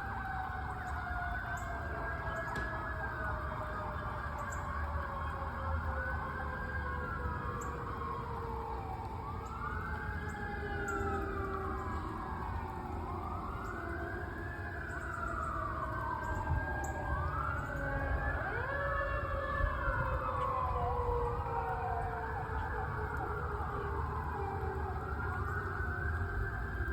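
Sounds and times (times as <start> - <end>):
fire engine sirens wailing: 0.0 - 26.9.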